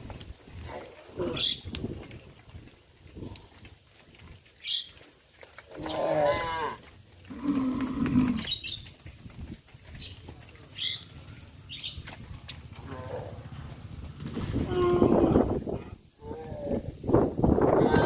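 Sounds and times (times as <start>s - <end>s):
birds chirping: 1.2s - 3.4s, 4.6s - 5.0s, 5.7s - 6.5s, 7.3s - 9.1s, 9.8s - 14.0s, 17.8s - 18.0s
cattle mooing: 5.8s - 8.5s, 14.6s - 15.6s, 17.8s - 18.0s.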